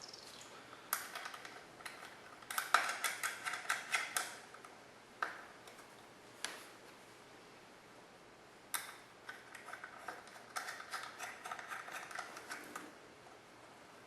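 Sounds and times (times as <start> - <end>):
small metal clicks: 0.9 - 5.9, 8.7 - 12.9.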